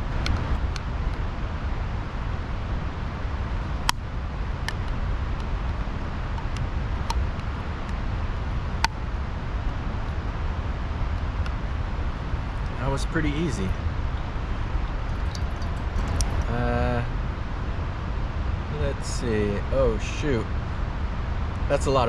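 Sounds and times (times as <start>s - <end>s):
creek rushing: 11.9s - 17.0s.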